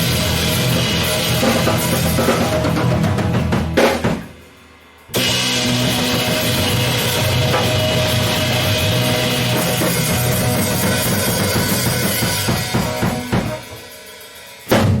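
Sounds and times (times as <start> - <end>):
live rock band playing: 0.0 - 4.4, 5.1 - 15.0
drum hits: 5.2 - 13.9.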